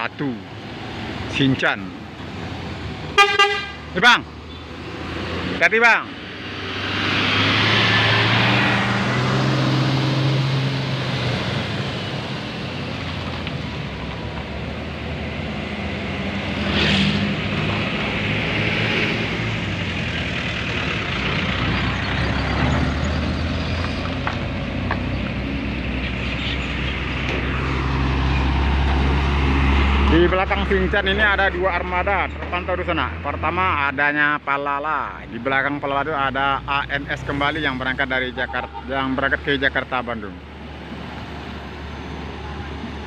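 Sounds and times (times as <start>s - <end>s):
diesel buses passing: 0.0s - 43.0s
heavy vehicle approaching: 4.2s - 33.4s.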